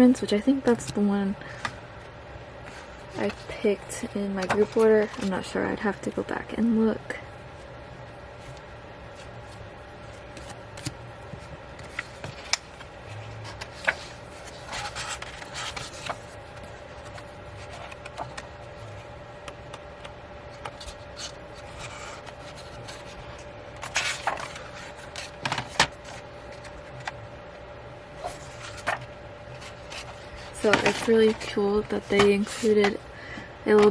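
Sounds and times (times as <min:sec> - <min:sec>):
booklet pages turning: 0:02.6 - 0:06.2, 0:08.4 - 0:27.2, 0:28.2 - 0:33.0
paper rustling: 0:04.4 - 0:05.6, 0:08.4 - 0:27.2, 0:28.2 - 0:33.0.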